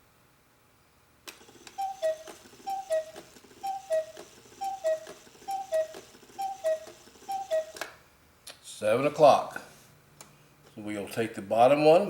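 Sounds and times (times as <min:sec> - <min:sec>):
clock mechanism click: 0:01.3 - 0:08.0
cuckoo clock call: 0:01.4 - 0:08.0.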